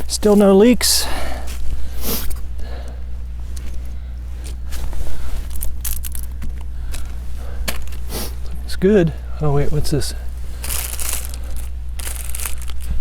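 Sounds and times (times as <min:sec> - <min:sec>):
small gasoline engine running: 0:10.1 - 0:13.0.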